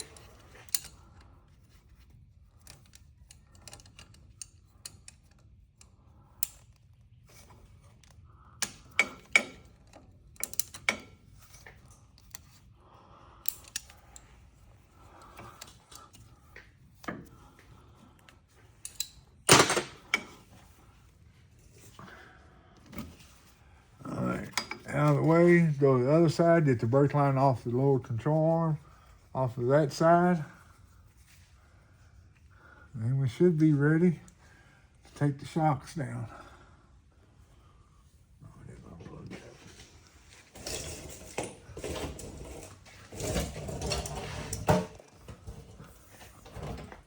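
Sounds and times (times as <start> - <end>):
tools and metal parts clinking: 0.0 - 5.5, 7.3 - 12.6, 18.7 - 20.6, 24.4 - 25.3, 40.5 - 45.6.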